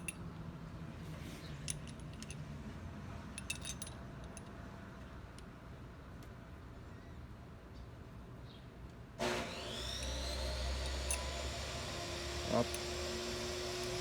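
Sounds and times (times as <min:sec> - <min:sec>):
small metal parts clinking: 0:00.0 - 0:00.2, 0:01.6 - 0:02.5, 0:03.3 - 0:04.6, 0:10.0 - 0:11.4.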